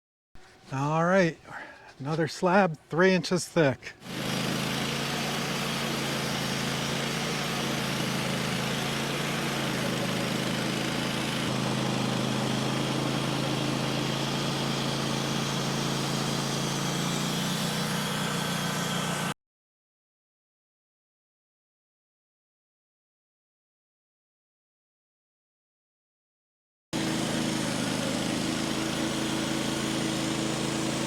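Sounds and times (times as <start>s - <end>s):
sawmill engine running: 0.4s - 19.4s, 27.0s - 31.0s.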